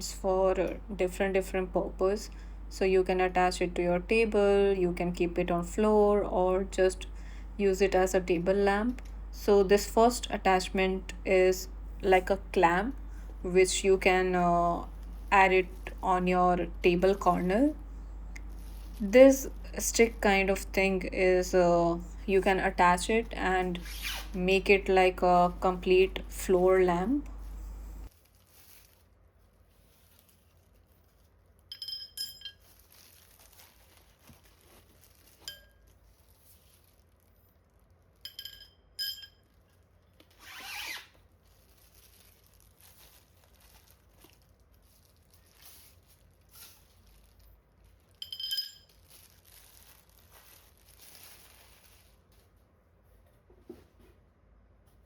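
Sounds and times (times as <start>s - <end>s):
metal lamp parts clinking: 31.7s - 32.6s, 38.2s - 39.4s, 48.2s - 49.0s
packaging rustling: 32.6s - 37.3s, 41.4s - 48.2s, 48.9s - 52.5s.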